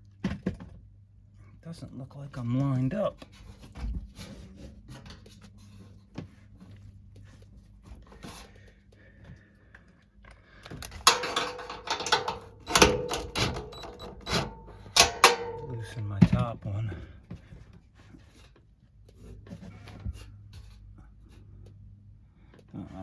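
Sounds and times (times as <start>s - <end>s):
metal parts clicking and clattering: 10.7s - 16.0s.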